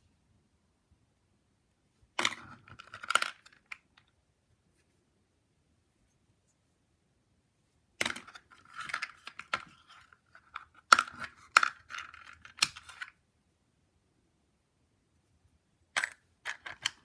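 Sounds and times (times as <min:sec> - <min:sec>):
jewelry rustling and clinking: 0:08.0 - 0:13.2, 0:15.9 - 0:17.0.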